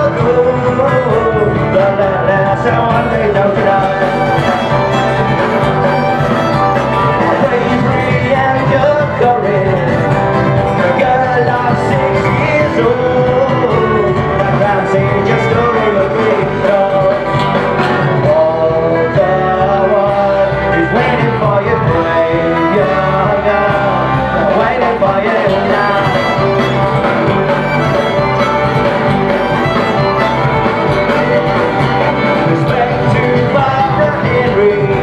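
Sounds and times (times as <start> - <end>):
fiddle playing tune: 0.0 - 17.4, 25.2 - 35.0
folk-punk band playing live: 0.0 - 35.0
person singing: 0.0 - 35.0.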